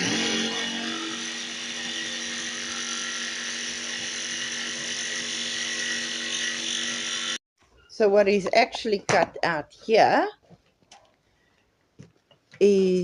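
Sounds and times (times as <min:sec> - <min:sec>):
electric power tool running: 0:00.0 - 0:07.4.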